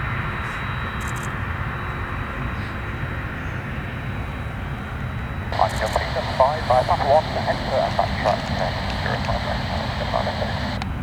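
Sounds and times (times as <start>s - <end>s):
high engine whine: 5.5s - 10.8s
jet engine rushing: 5.6s - 10.8s.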